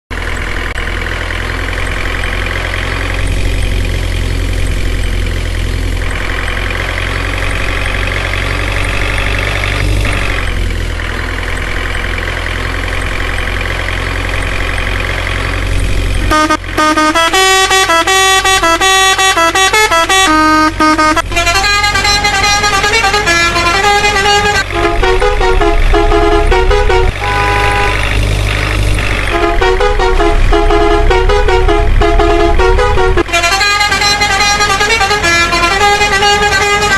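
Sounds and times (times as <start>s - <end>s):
truck sound: 0.1s - 36.9s
droning horn-like tones: 16.3s - 28.1s, 29.3s - 36.9s.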